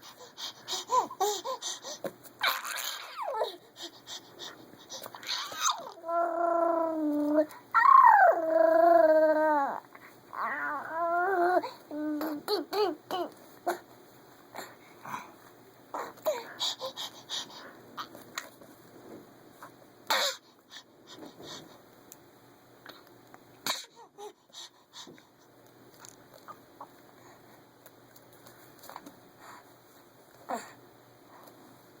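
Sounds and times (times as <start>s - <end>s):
baby laughing breathily: 0.0s - 5.8s
baby making raspy growly sounds: 2.4s - 3.6s, 5.1s - 13.8s.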